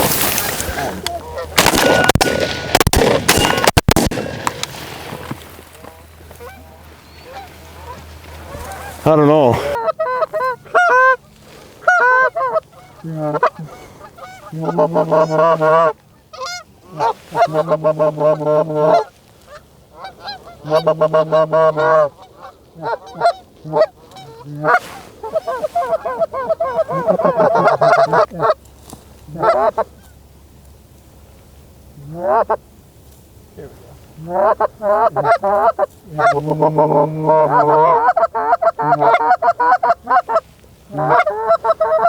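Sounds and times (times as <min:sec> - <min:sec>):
goose honking: 0:00.6 - 0:02.2, 0:06.3 - 0:28.6, 0:29.3 - 0:30.2, 0:32.0 - 0:32.6, 0:34.2 - 0:42.0.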